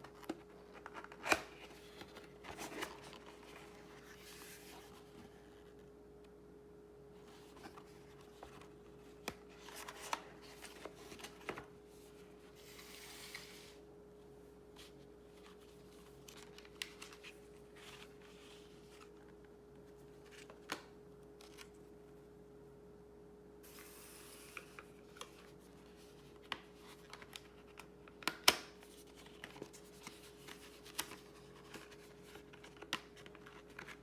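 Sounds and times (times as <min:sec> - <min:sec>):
packaging rustling: 0:00.0 - 0:05.4
faint steady hum: 0:00.0 - 0:34.0.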